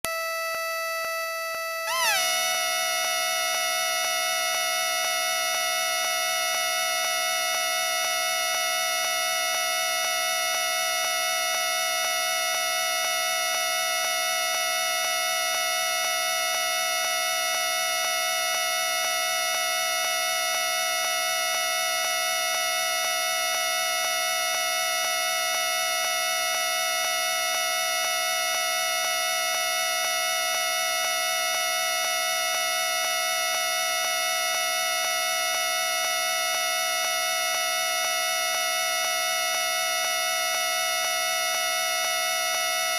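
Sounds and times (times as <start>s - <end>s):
party horn buzzing: 1.9s - 6.0s.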